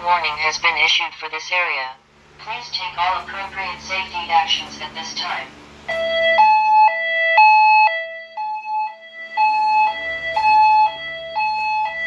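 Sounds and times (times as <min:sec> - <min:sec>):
hi-lo alarm tone: 0:02.5 - 0:12.0.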